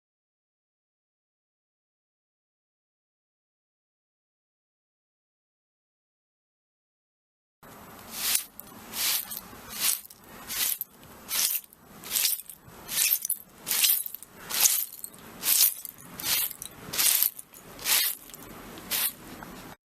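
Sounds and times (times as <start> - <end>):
broom sweeping broken glass: 8.0 - 19.4.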